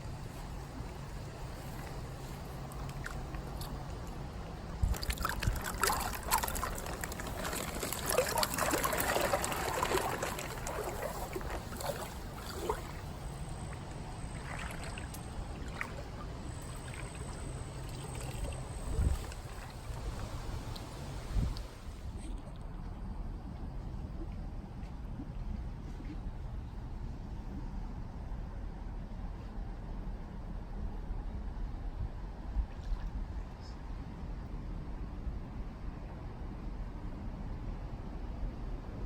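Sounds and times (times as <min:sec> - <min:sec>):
steady low hum: 0:00.0 - 0:39.0
water splashing and trickling: 0:00.8 - 0:22.9.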